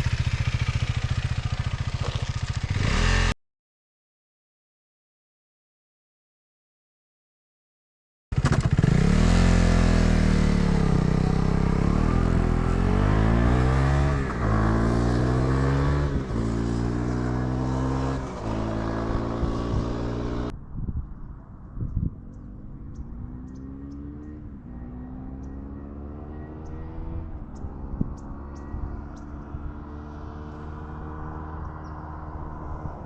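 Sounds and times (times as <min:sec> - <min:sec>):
motorcycle engine revving: 0:00.0 - 0:03.4, 0:08.3 - 0:20.5, 0:22.5 - 0:33.0.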